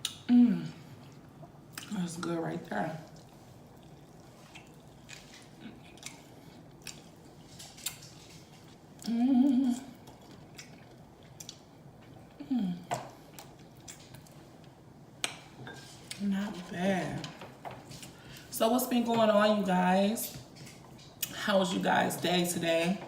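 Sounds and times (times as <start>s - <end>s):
person humming: 0.3s - 0.8s, 9.0s - 9.9s, 12.4s - 12.9s
chewing and mouth smacking: 3.0s - 12.4s, 13.2s - 15.4s.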